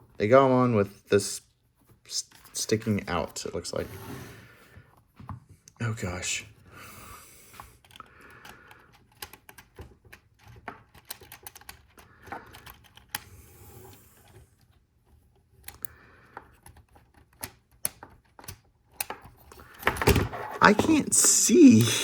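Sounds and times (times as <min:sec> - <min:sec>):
plastic pieces clicking and rattling: 0:07.8 - 0:13.2.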